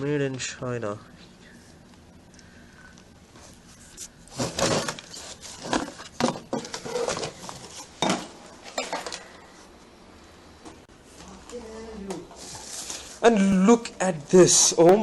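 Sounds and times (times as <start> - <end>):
objects knocking and rattling: 4.3 - 9.2.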